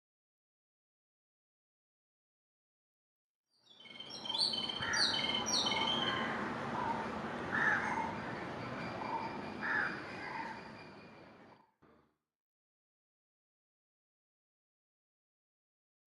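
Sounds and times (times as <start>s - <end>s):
outdoor background: 3.5s - 12.1s
lower bird calls: 3.8s - 11.2s.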